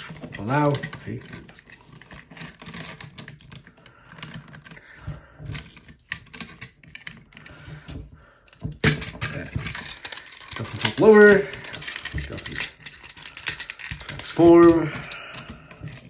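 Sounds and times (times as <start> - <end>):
plastic toy parts clicking: 0.0 - 4.8, 5.5 - 7.7, 8.5 - 16.0.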